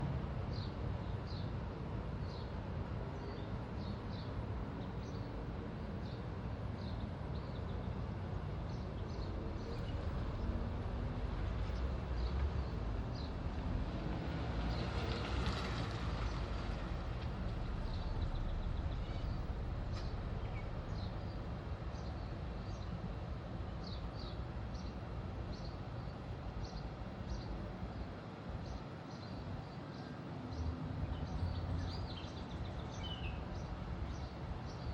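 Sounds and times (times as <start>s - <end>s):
steady low rumble: 9.2s - 14.7s, 16.1s - 23.8s
rushing noise: 16.8s - 22.5s
small birds chirping: 31.1s - 34.9s.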